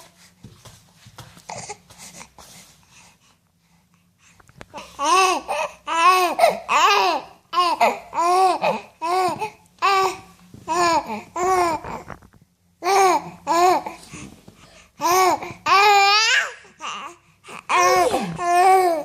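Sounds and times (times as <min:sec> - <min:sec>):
baby cooing and babbling: 0:04.7 - 0:12.2, 0:12.8 - 0:14.0, 0:15.0 - 0:19.0.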